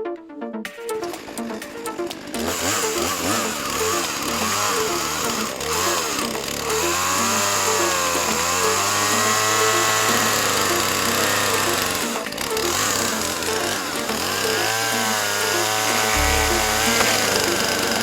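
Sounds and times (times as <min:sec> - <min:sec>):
background music: 0:00.0 - 0:18.0
chainsaw engine revving: 0:01.0 - 0:18.0.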